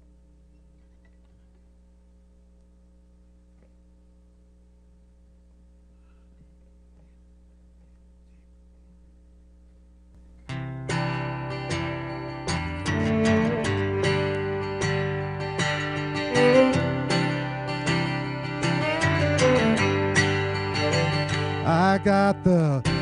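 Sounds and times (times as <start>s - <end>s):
low electrical hum: 0.0s - 23.0s
guitar strumming chords: 10.4s - 23.0s.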